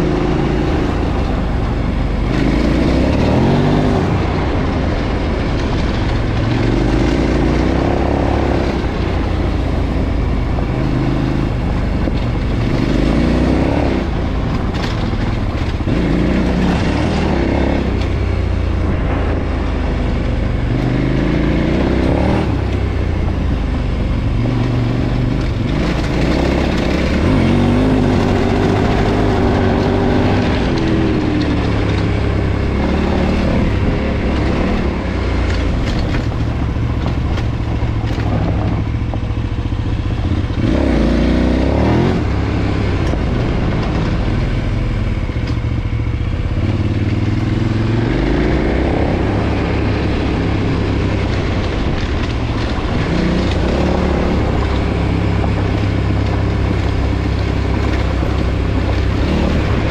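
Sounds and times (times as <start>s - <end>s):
motorcycle engine revving: 0.0s - 59.9s.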